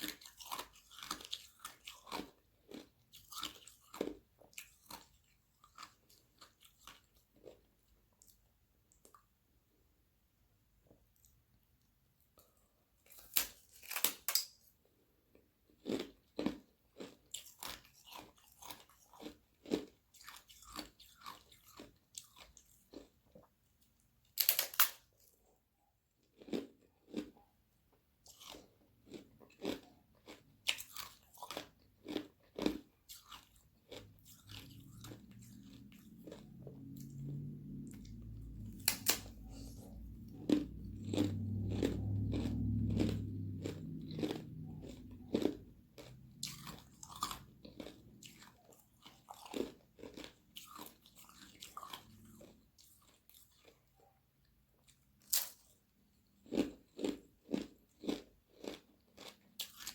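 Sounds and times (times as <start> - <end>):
crunchy chewing: 0.0 - 9.3, 12.4 - 59.9
low background hum: 33.5 - 49.3.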